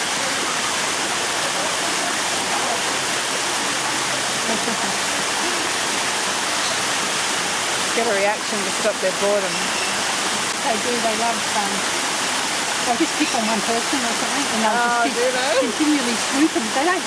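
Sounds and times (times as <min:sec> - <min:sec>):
faint voices: 0:00.0 - 0:05.9, 0:12.8 - 0:17.0.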